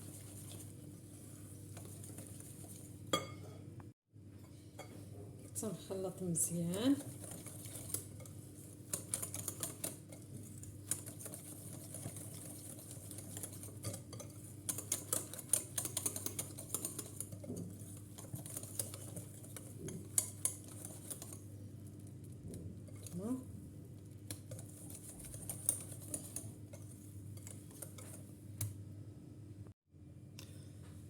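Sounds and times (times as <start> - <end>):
utensil clicking against a bowl: 8.9 - 10.2, 10.8 - 21.4, 24.2 - 28.8.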